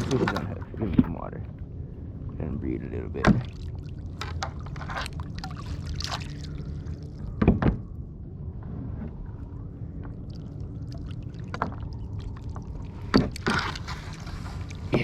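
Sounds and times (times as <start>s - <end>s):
water sloshing against boat hull: 0.0s - 1.6s, 2.2s - 15.0s
steady low rumble: 0.0s - 15.0s
sharp knocks on boat: 3.2s - 3.6s, 7.4s - 7.8s.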